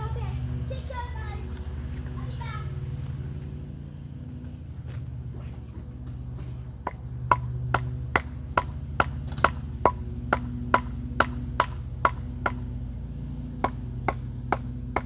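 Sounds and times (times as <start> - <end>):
steady low rumble: 0.0 - 15.0
sharp knocks of wood struck: 6.4 - 12.6.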